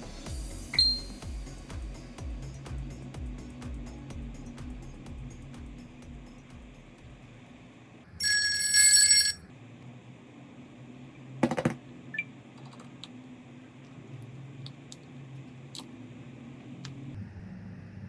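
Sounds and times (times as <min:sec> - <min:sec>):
phone ringing: 0:08.2 - 0:09.4.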